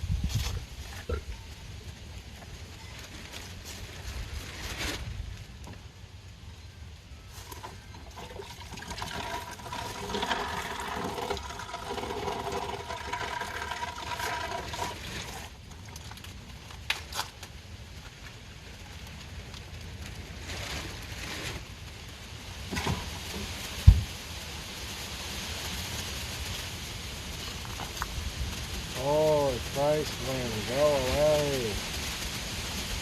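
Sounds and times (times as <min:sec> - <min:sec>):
wind buffeting microphone: 0:00.0 - 0:00.8, 0:23.8 - 0:24.2.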